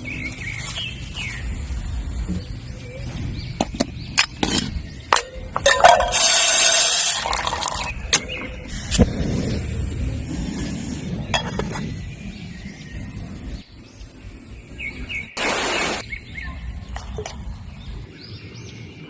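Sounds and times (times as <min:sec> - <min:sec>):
cookware clicking and knocking: 0:05.2 - 0:06.3
water poured into a pot: 0:05.8 - 0:07.9.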